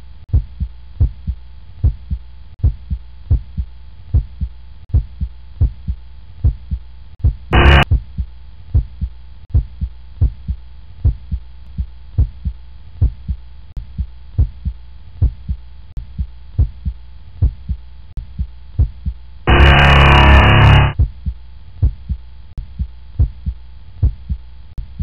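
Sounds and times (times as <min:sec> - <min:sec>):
faint hum: 0:00.0 - 0:25.0
heartbeat double thumps: 0:00.3 - 0:25.0
short loud noisy burst: 0:07.6 - 0:07.8, 0:19.5 - 0:21.0.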